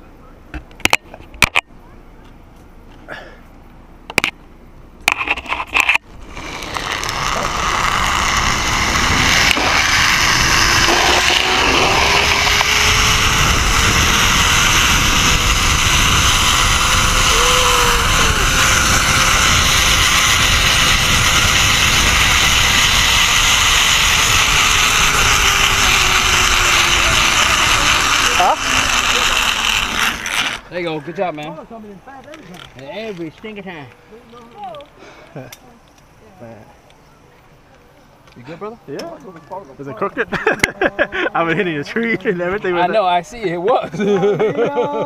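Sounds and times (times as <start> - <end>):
faint hum: 1.2 - 32.1
zipline pulleys whirring on cable: 5.3 - 30.8.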